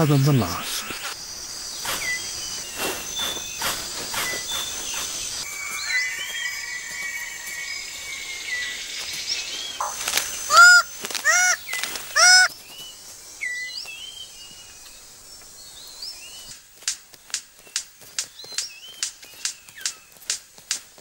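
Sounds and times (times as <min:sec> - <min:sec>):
birds chirping and whistling: 0:00.9 - 0:16.5, 0:17.6 - 0:20.2
harsh honking bird calls: 0:09.8 - 0:12.5.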